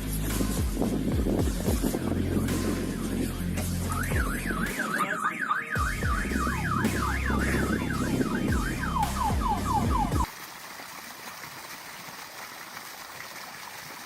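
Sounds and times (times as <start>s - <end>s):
deep low hum: 0.0s - 4.7s, 5.8s - 10.3s
electronic alarm warbling: 3.9s - 10.3s.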